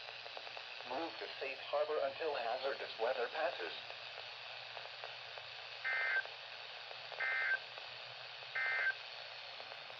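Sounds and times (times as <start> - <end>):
radio hiss: 0.0 - 9.9
digital data tone bursts: 5.9 - 6.2, 7.2 - 7.6, 8.6 - 9.0.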